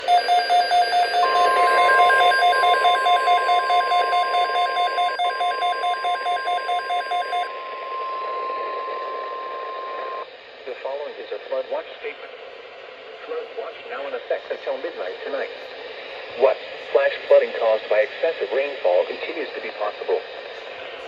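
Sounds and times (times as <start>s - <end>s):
rapid electronic alert beep: 0.0s - 10.2s
steady warning alarm tone: 0.0s - 10.2s.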